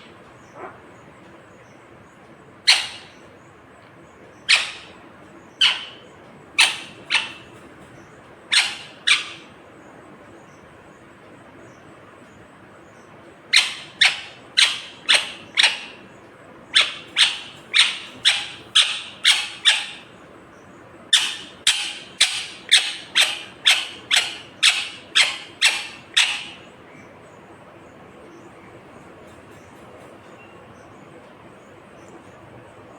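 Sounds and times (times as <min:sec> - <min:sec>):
parakeet screeching calls: 0:02.7 - 0:03.2, 0:04.4 - 0:05.0, 0:05.6 - 0:07.6, 0:08.5 - 0:09.5, 0:13.5 - 0:16.0, 0:16.8 - 0:20.1, 0:21.1 - 0:26.7.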